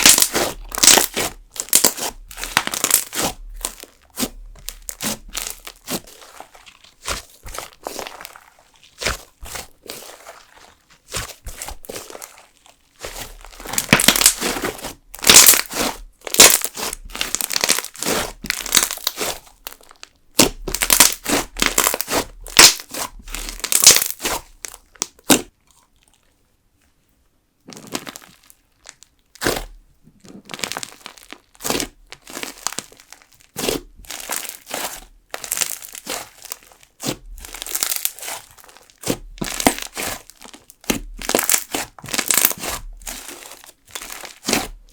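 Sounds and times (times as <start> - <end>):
slime crackling and crunching: 0.0 - 26.1, 27.6 - 44.9.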